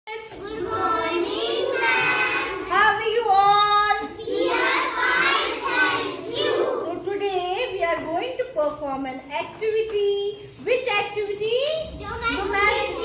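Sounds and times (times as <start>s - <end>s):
young children singing: 0.2s - 2.8s, 3.7s - 7.0s, 12.0s - 13.0s.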